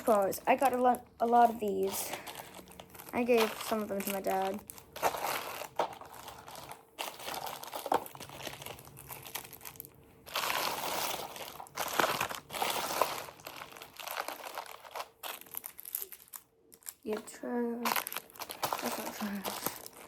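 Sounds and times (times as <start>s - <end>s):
candy wrappers crinkling: 0.0s - 20.0s.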